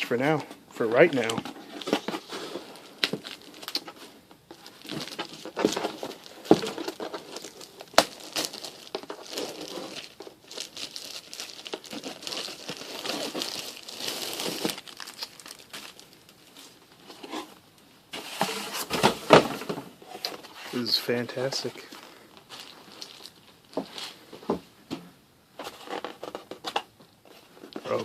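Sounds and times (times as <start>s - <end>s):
plastic wrapping crinkling and tearing: 1.2s - 16.8s, 21.3s - 24.2s.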